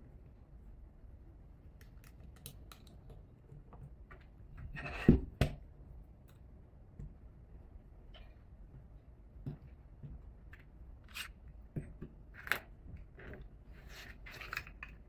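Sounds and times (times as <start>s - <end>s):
small parts clicking and scraping: 13.2s - 15.0s.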